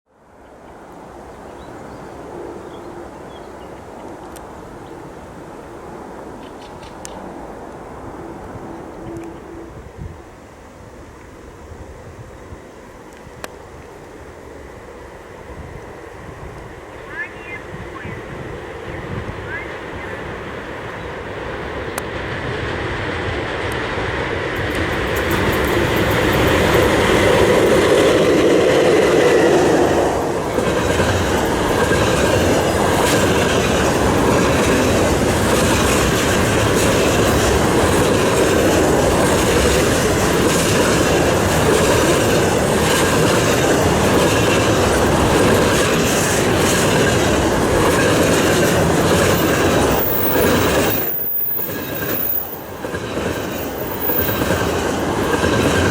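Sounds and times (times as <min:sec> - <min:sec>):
freight wagons rumbling past: 0:18.8 - 0:55.9
wheels clacking over rail joints: 0:21.9 - 0:55.9.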